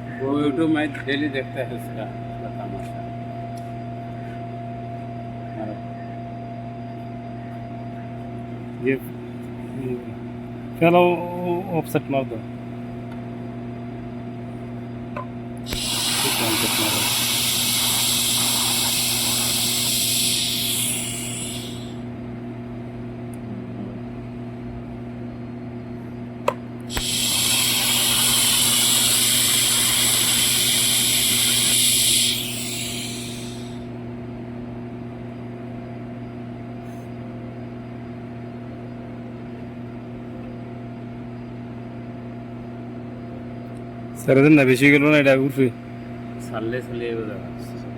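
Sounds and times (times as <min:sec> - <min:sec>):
steady machine hum: 0:00.0 - 0:47.9
arc welding hiss: 0:15.7 - 0:22.0, 0:26.9 - 0:33.8.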